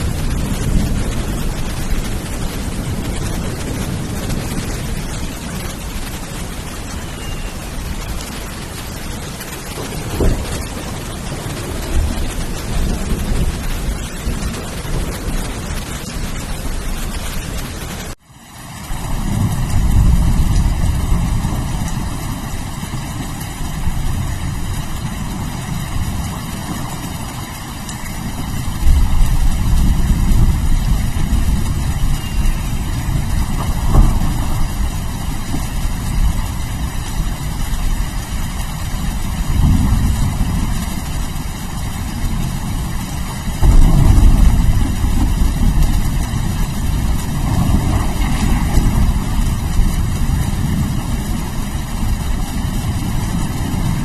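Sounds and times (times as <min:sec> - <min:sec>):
low rolling thunder: 0:00.0 - 0:18.2, 0:18.8 - 0:54.0
heavy rain: 0:00.0 - 0:54.0.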